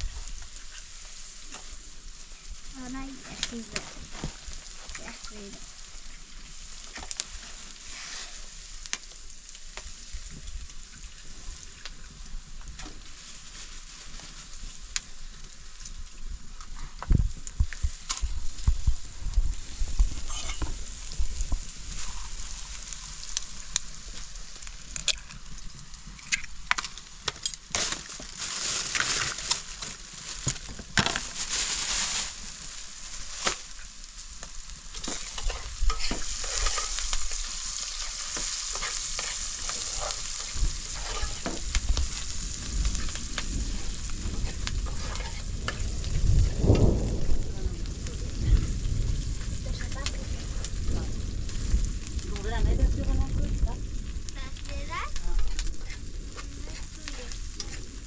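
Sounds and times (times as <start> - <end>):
food sizzling in hot oil: 0.0 - 58.0
utensil stirring in a pan: 2.5 - 10.0, 17.6 - 46.6, 54.8 - 58.0.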